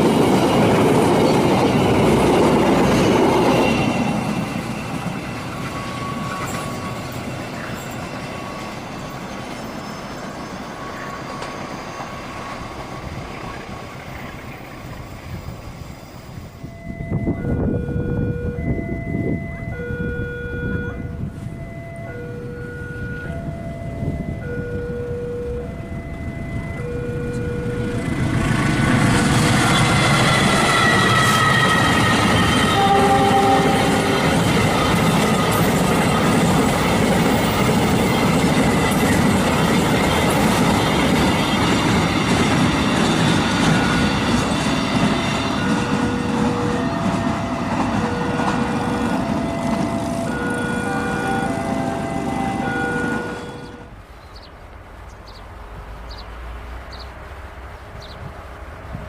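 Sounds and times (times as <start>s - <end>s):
electronic two-tone warning chime: 16.6s - 28.0s, 43.7s - 53.9s
locomotive horn: 17.0s - 28.0s, 29.6s - 35.8s, 43.6s - 54.0s
train wheels clacking over rail joints: 28.3s - 50.5s.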